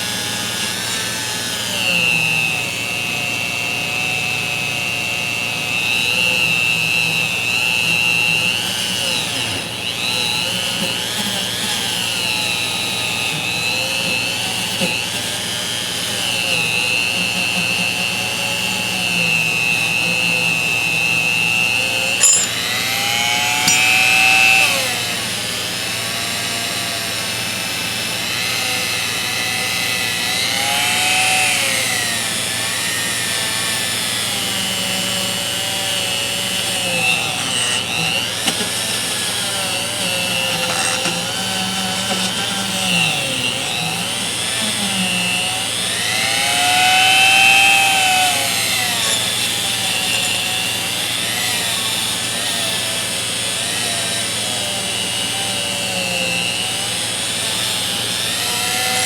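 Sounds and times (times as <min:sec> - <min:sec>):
rotary tool whining on metal: 0:00.0 - 0:59.0.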